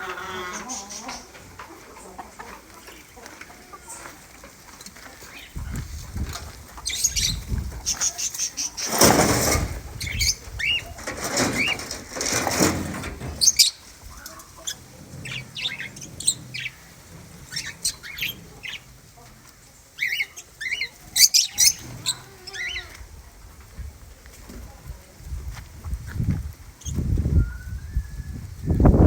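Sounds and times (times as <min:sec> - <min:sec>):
birds chirping: 0:00.0 - 0:23.5
rustling flapping noise: 0:01.0 - 0:22.3, 0:23.0 - 0:29.0.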